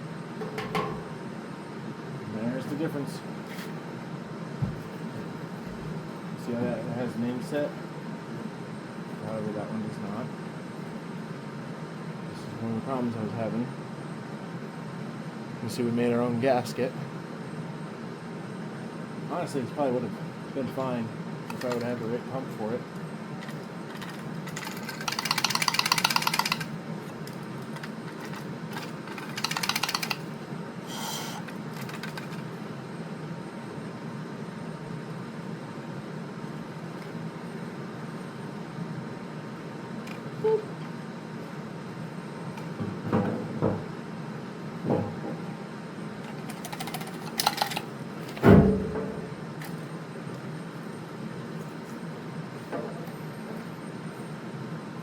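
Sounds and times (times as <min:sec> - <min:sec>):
steady low hum: 0:00.0 - 0:55.0
tool clicking rapidly: 0:21.5 - 0:21.9, 0:23.9 - 0:26.7, 0:27.8 - 0:30.3, 0:31.7 - 0:32.4, 0:46.5 - 0:47.9
rattle of sharp ticks: 0:21.5 - 0:22.0, 0:23.4 - 0:30.3, 0:31.0 - 0:32.4, 0:46.3 - 0:47.9.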